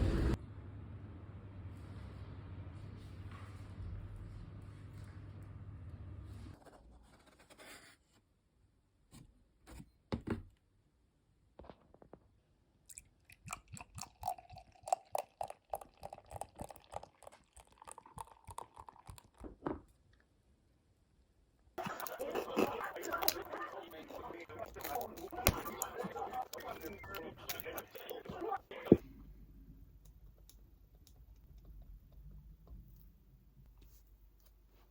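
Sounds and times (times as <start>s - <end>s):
crunchy chewing: 21.8s - 29.0s.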